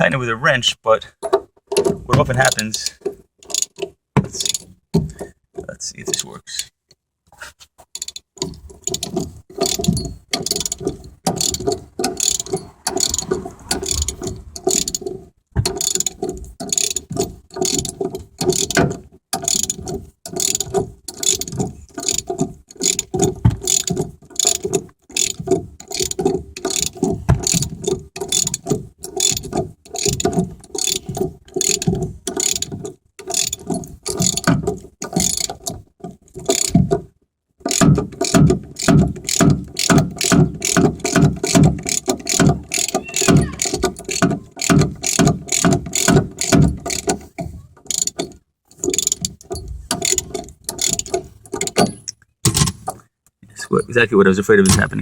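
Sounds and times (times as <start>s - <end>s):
ratchet wrench clicking: 2.5s - 3.8s, 8.0s - 15.1s, 15.7s - 34.5s, 35.1s - 35.7s, 37.7s - 47.1s, 47.9s - 51.9s.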